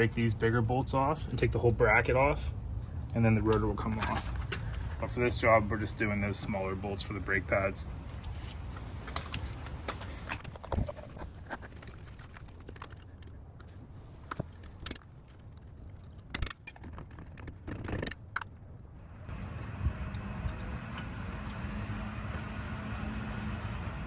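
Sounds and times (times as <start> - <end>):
wrench clinking on metal bolts: 8.2 - 10.8.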